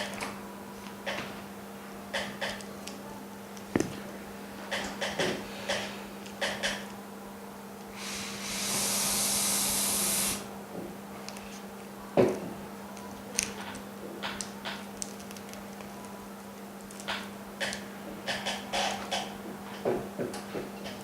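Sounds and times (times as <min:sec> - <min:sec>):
pressurised spray hissing: 0:08.0 - 0:10.4.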